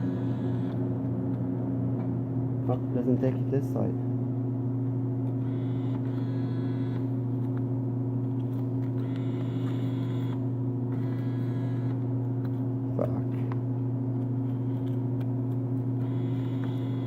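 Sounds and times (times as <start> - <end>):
bill acceptor motor whirring: 0.0 - 1.0, 5.2 - 7.6, 8.3 - 12.6, 14.4 - 17.0
vending machine electrical hum: 0.0 - 17.0.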